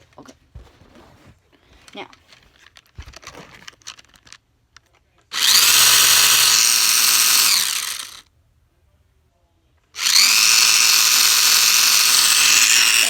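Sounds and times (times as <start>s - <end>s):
remote control car motor whine: 5.3s - 8.2s, 10.0s - 13.0s.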